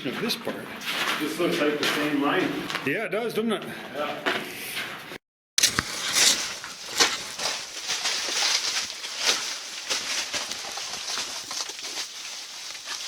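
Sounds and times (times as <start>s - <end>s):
footsteps crunching on gravel: 5.6s - 13.0s.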